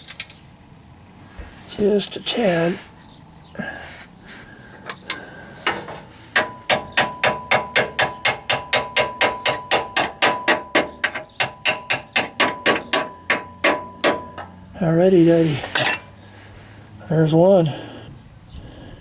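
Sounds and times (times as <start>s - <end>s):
hammer tapping on metal: 4.9s - 14.6s
metallic ring: 6.4s - 14.7s, 15.6s - 16.3s.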